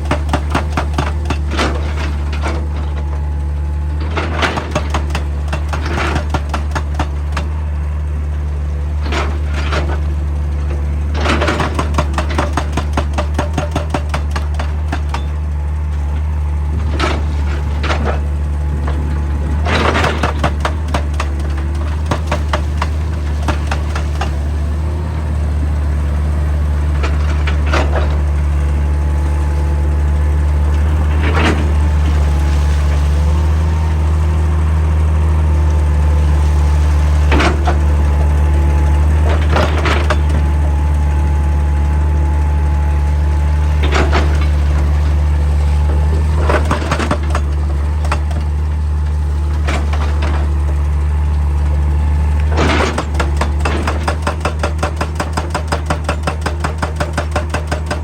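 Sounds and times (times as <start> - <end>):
hydraulic rock breaker hammering: 0.0 - 3.3, 3.9 - 7.8, 8.9 - 58.0
diesel engine running: 0.0 - 58.0.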